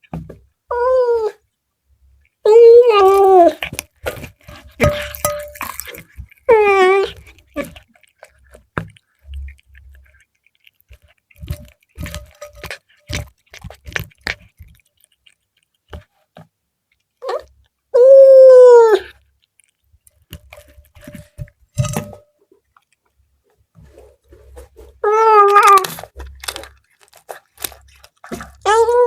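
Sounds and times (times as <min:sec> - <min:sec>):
cat chewing with crunches: 0:01.4 - 0:17.9, 0:19.0 - 0:29.0
cat meowing: 0:25.0 - 0:25.9.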